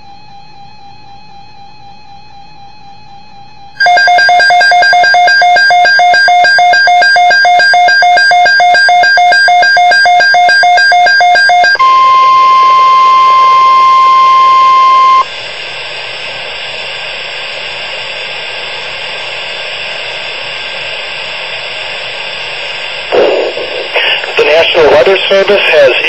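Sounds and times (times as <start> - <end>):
fast-pulsing electronic alert tones: 3.8 - 15.3
steady warning alarm tone: 3.8 - 26.0
radio static hiss: 12.0 - 26.0.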